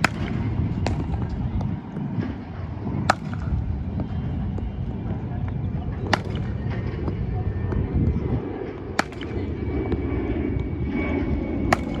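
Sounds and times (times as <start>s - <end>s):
outdoor rumble: 0.0s - 12.0s
cricket bat striking ball: 3.1s - 3.6s, 11.7s - 12.0s.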